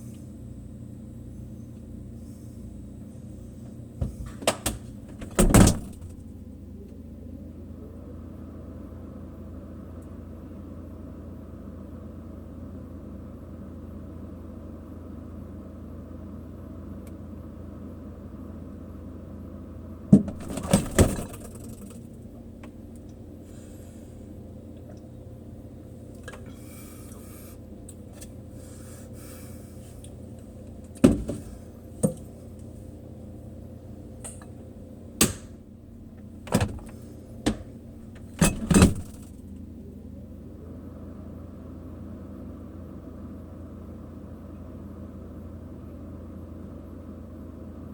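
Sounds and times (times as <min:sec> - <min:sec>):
refrigerator hum: 0:00.0 - 0:47.9
items clinking in fridge: 0:20.2 - 0:22.0, 0:36.4 - 0:39.4.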